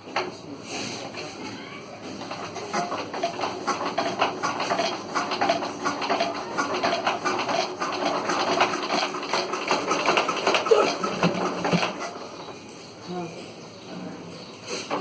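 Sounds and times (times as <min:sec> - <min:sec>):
diesel engine chugging: 0:02.0 - 0:13.1.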